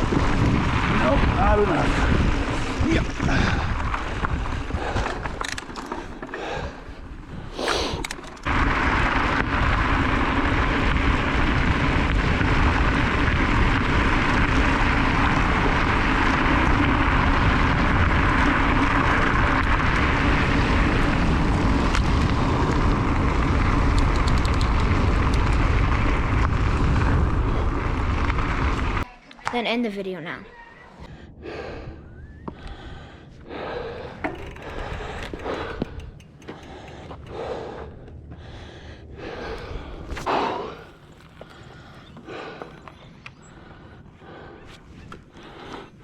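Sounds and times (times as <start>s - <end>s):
wind rushing over microphone: 0.0s - 5.7s, 6.4s - 29.1s, 30.9s - 46.0s
bike clicks and knocks: 3.8s - 6.6s, 7.7s - 8.5s, 23.4s - 25.7s, 33.8s - 38.1s.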